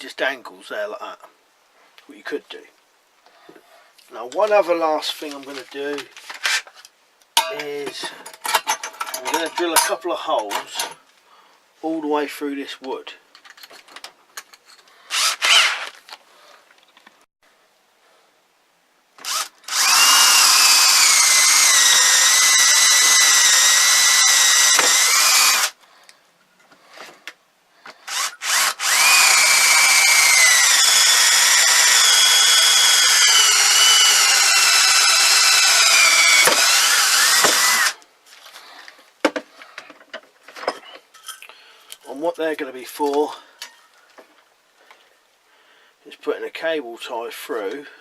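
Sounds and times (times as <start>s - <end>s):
electric drill boring wood: 15.1s - 15.9s, 19.2s - 25.8s, 28.0s - 38.0s.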